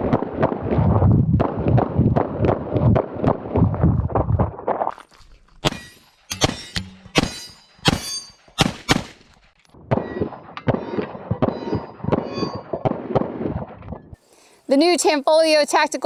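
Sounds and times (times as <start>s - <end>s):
pistol shots: 5.6s - 13.6s
short metallic ring: 5.7s - 8.6s.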